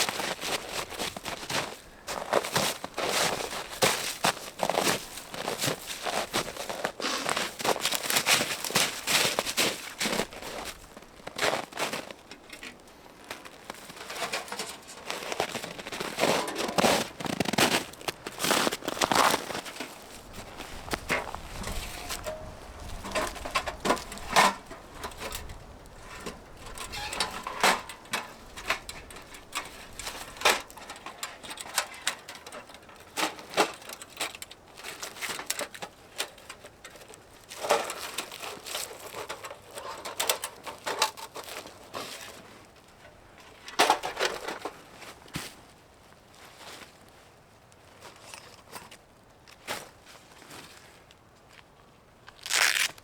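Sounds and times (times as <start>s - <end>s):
footsteps crunching in snow: 0.0s - 31.0s, 52.3s - 53.0s.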